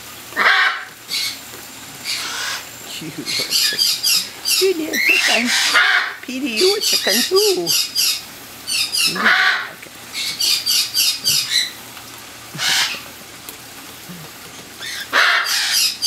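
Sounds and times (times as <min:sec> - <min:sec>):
cockatiels chirping and screeching: 0:02.0 - 0:02.6, 0:03.3 - 0:11.8, 0:12.6 - 0:13.0, 0:14.8 - 0:16.0.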